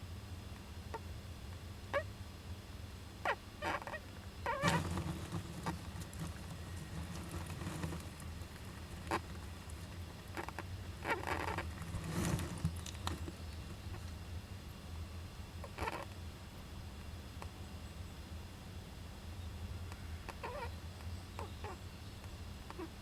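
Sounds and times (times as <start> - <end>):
flying squirrel calls: 3.2 - 4.9, 9.0 - 9.4, 10.2 - 11.8, 15.6 - 16.2, 20.0 - 21.8.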